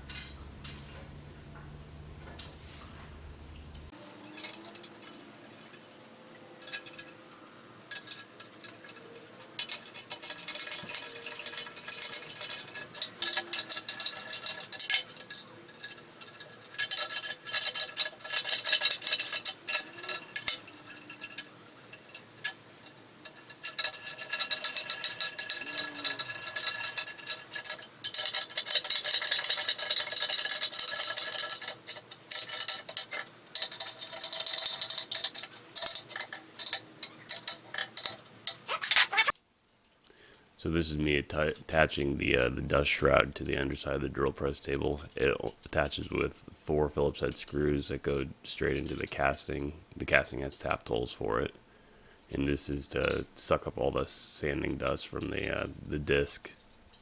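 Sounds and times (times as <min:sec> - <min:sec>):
rapid metallic clicking of bolts: 0:06.5 - 0:38.6.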